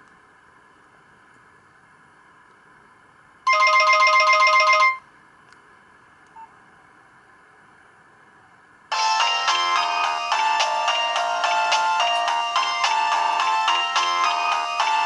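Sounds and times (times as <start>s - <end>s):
trilling electronic phone ring: 3.5s - 5.0s, 8.9s - 15.0s.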